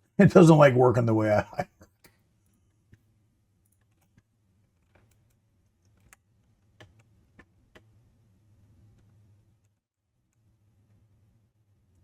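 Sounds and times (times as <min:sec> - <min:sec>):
low steady hum: 0:00.0 - 0:12.0
mouse and keyboard clicks: 0:03.7 - 0:07.9.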